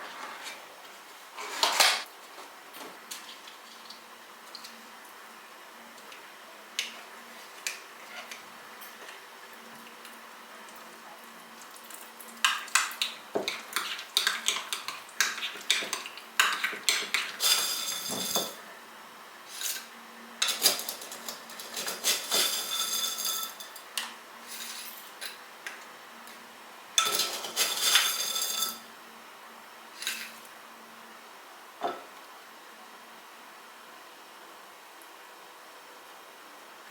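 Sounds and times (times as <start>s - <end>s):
cutlery and dishes clinking: 20.4s - 23.8s, 27.0s - 28.8s.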